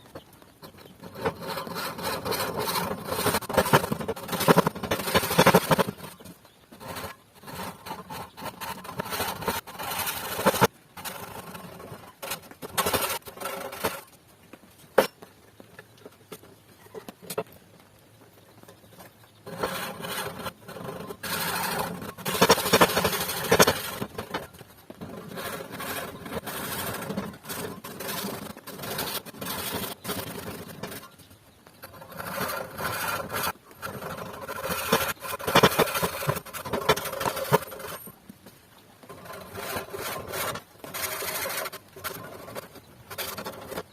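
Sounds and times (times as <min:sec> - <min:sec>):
hand saw rasping through wood: 0:01.0 - 0:06.2, 0:06.8 - 0:14.0, 0:19.5 - 0:24.4, 0:25.1 - 0:31.0, 0:31.9 - 0:38.1, 0:39.1 - 0:43.9.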